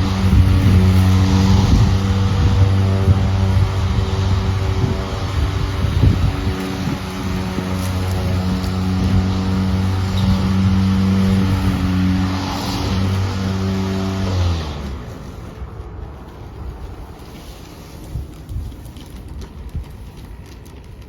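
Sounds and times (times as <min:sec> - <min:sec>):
lawn mower running: 0:00.0 - 0:15.8.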